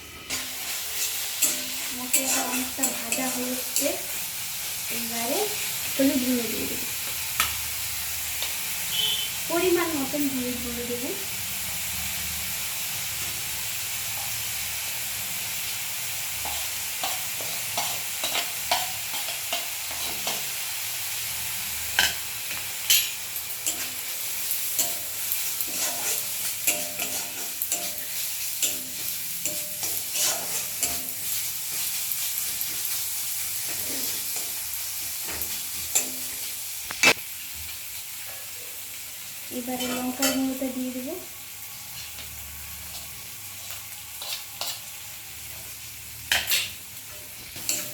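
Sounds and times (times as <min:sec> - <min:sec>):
spatula scraping a pan: 0:00.0 - 0:04.0, 0:16.4 - 0:20.5, 0:22.0 - 0:33.0, 0:33.6 - 0:36.4, 0:42.9 - 0:45.0
spice paste sizzling in a pan: 0:00.0 - 0:47.9.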